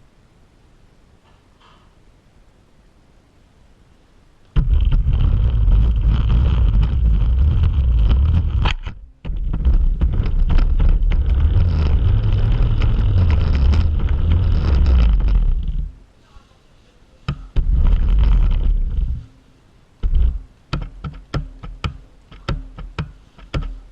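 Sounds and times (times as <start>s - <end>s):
rc car wheels rumbling: 4.5s - 16.0s, 17.5s - 19.3s, 20.0s - 20.5s.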